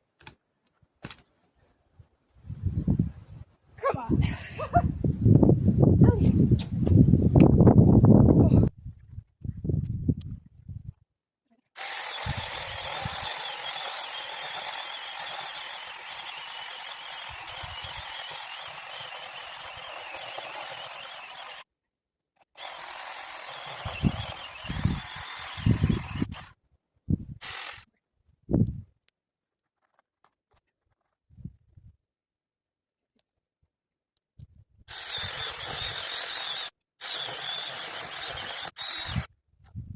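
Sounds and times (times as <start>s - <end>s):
mini chainsaw motor whine: 11.8s - 21.7s, 22.6s - 26.5s, 27.4s - 27.9s, 34.9s - 39.3s.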